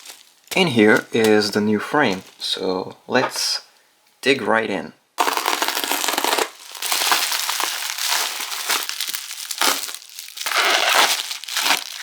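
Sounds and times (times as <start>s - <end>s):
packaging crinkling and rustling: 0.0s - 2.6s, 5.2s - 12.0s.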